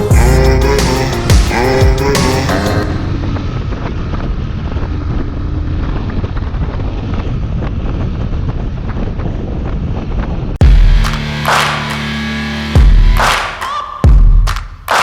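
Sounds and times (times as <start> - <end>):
wind buffeting microphone: 2.9 - 10.6.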